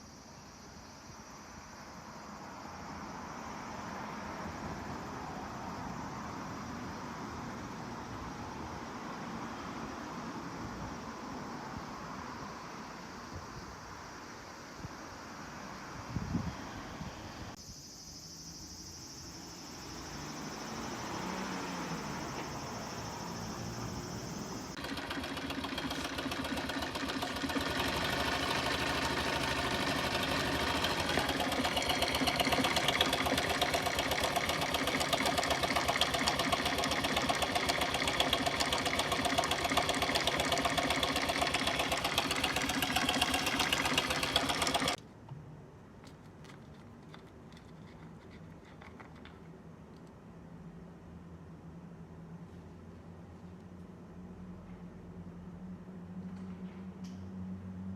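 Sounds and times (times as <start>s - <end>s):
motorcycle engine clattering: 24.8s - 45.0s.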